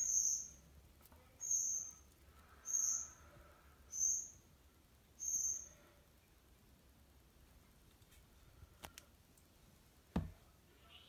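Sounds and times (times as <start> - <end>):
cricket chirping: 0.0 - 0.6, 1.4 - 3.3, 3.9 - 4.5, 5.2 - 5.9.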